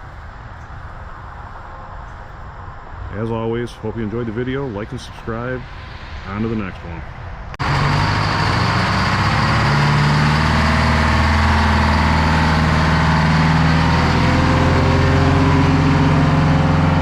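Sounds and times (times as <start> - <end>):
large engine running: 7.6 - 17.0.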